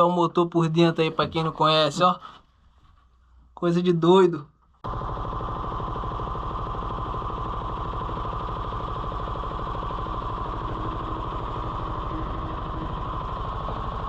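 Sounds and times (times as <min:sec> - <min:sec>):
boat engine running: 0:04.9 - 0:14.0.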